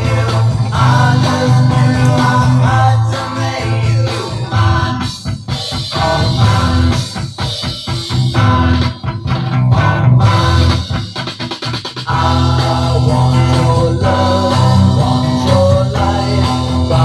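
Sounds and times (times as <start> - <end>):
bass guitar: 0.0 - 17.0
drum kit beat: 0.0 - 17.0
electric guitars: 0.0 - 17.0.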